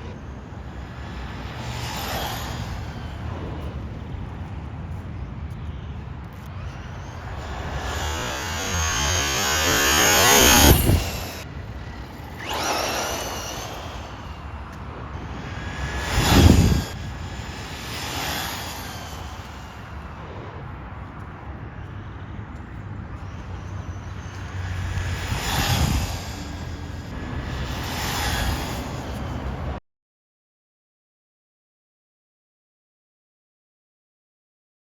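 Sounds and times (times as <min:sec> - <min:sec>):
rc car motor whining: 0:00.1 - 0:04.2, 0:06.2 - 0:20.3, 0:23.2 - 0:29.8.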